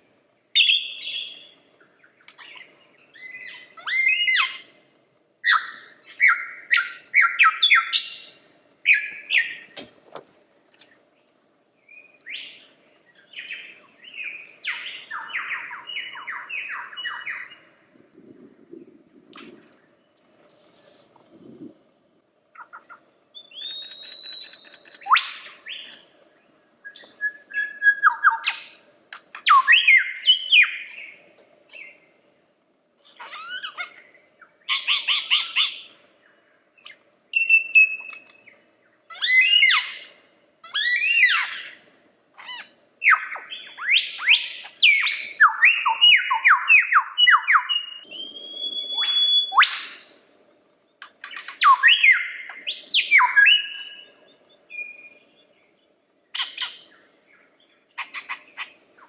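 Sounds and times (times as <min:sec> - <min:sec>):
lyrebird singing: 0:00.6 - 0:04.8, 0:05.4 - 0:09.8, 0:10.8 - 0:17.8, 0:19.2 - 0:21.1, 0:22.5 - 0:26.1, 0:26.8 - 0:32.1, 0:33.0 - 0:41.8, 0:42.4 - 0:50.2, 0:50.8 - 0:59.0.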